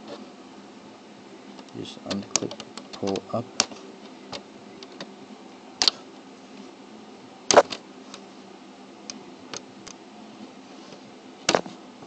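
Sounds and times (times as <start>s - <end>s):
plastic parts clicking and knocking: 1.6s - 5.1s.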